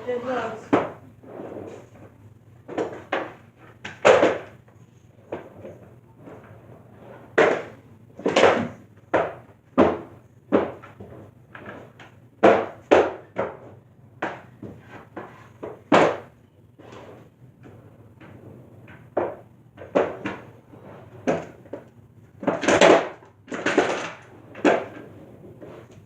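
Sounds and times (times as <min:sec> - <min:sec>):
skateboard knocking on wooden ramps: 0:02.6 - 0:04.6, 0:05.2 - 0:16.3, 0:18.2 - 0:20.5, 0:21.2 - 0:26.0.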